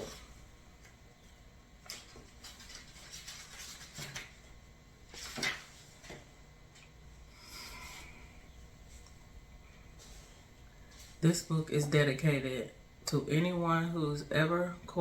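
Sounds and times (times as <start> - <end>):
book pages turning: 5.1 - 6.2.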